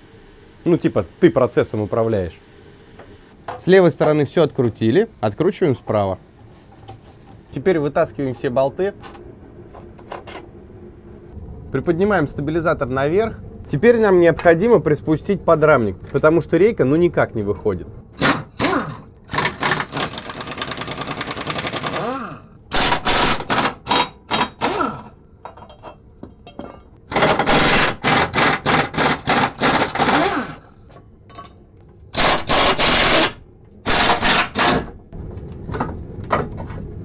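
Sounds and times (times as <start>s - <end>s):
impact wrench hammering: 32.2s - 34.9s.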